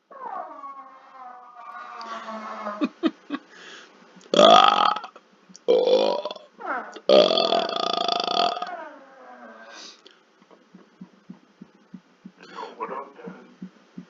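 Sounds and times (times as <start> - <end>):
man burping: 4.3 - 6.4, 7.0 - 8.7.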